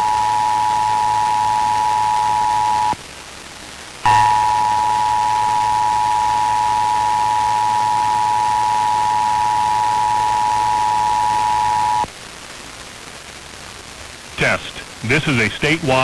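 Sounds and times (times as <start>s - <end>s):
radio hiss: 0.0s - 16.0s.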